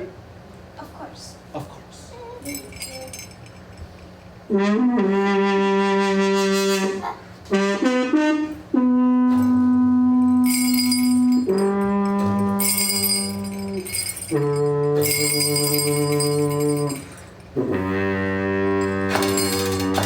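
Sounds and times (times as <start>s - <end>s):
high bell-like jingling: 2.4s - 4.2s, 9.4s - 17.6s, 19.1s - 20.0s
brass-like wind instrument notes: 4.5s - 20.0s.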